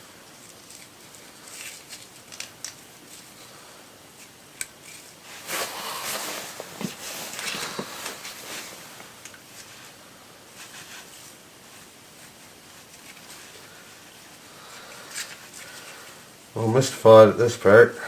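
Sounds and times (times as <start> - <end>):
metal parts scraping and rattling: 0.4 - 3.4, 4.2 - 8.7, 14.9 - 16.0.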